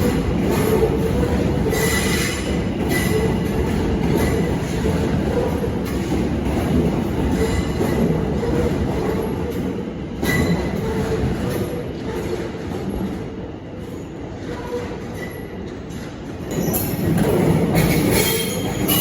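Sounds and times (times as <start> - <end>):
electric train rumbling: 0.0 - 19.0
train wheels squealing: 1.6 - 3.5, 10.2 - 11.7, 16.5 - 19.0.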